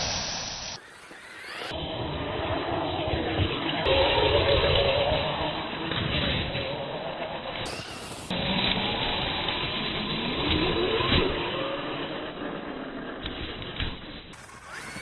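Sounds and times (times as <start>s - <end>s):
electric motor whining: 0.0s - 1.8s, 7.6s - 11.5s, 14.4s - 15.0s
rushing noise of running car: 1.4s - 15.0s.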